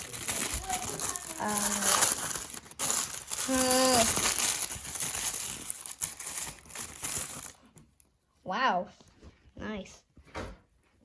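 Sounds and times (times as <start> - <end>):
packaging crinkling and rustling: 0.0 - 8.1.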